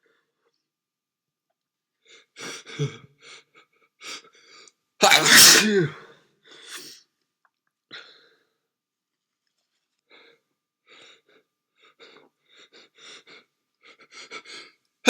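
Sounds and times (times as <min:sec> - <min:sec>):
faint catching breaths: 0:09.9 - 0:14.9.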